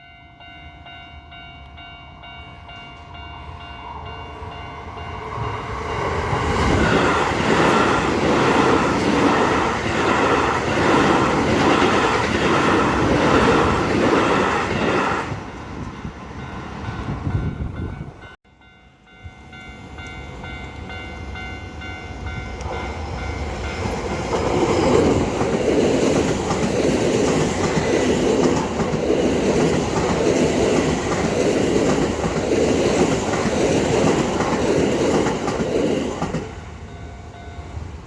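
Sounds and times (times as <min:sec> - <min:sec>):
level crossing warning bell: 0:00.0 - 0:35.7, 0:36.3 - 0:38.0.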